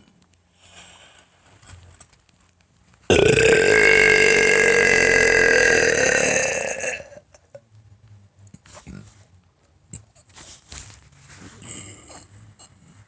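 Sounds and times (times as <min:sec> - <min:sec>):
loud burp: 0:03.1 - 0:07.3.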